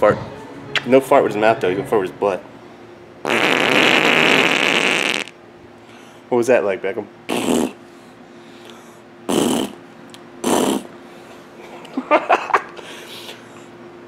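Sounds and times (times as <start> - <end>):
baby blowing raspberries: 3.3 - 5.3, 7.3 - 7.8, 9.3 - 9.8, 10.4 - 10.9.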